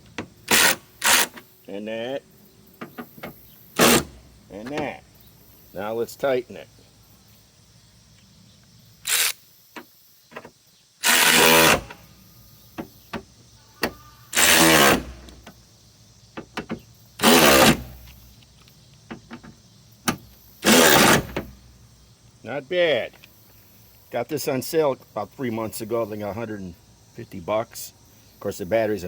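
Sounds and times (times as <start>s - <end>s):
cordless ratchet motor whining: 11.0s - 12.0s.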